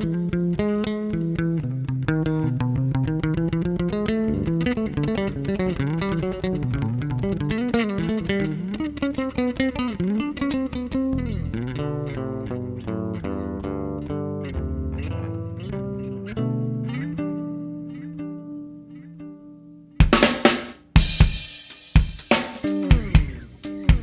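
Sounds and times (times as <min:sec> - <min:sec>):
fast plucked-string melody: 0:00.0 - 0:24.0
bass line: 0:11.1 - 0:17.2.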